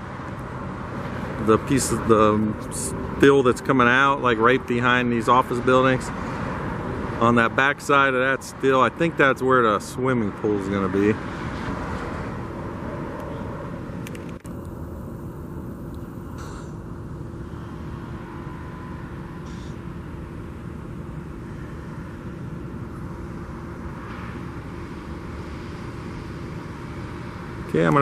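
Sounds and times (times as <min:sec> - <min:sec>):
vehicle rumble: 0:00.0 - 0:28.0
low hum: 0:12.0 - 0:28.0.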